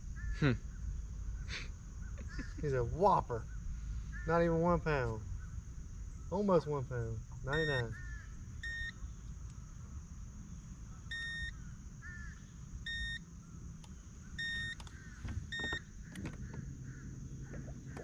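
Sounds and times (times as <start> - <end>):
low steady hum: 0.0 - 18.0
short electronic beeps: 7.5 - 8.0, 8.6 - 9.0, 11.1 - 11.6, 12.9 - 13.2, 14.4 - 14.8, 15.5 - 15.9.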